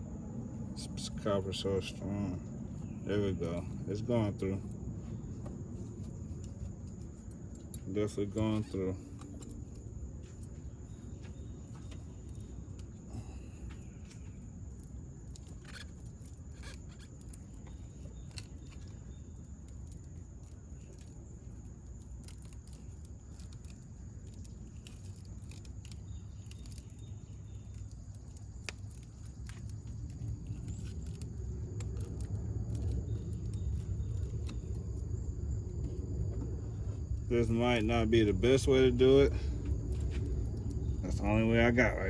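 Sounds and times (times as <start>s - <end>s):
low rumble: 0.0s - 8.4s.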